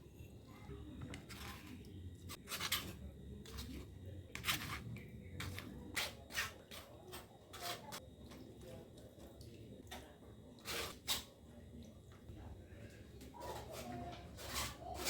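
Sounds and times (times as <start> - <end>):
kitchen utensils scraping: 1.2 - 8.0, 10.6 - 11.3, 13.2 - 15.0.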